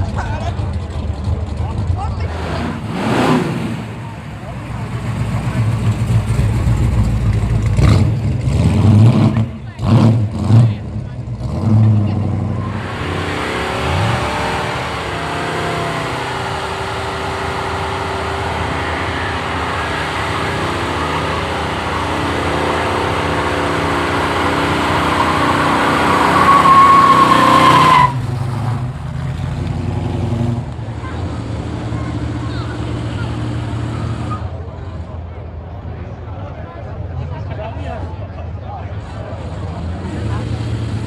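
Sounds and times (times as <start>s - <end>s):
lower engine sound: 0.0s - 41.0s
car engine revving high: 2.2s - 34.4s
tyres spinning and squealing: 12.2s - 29.4s.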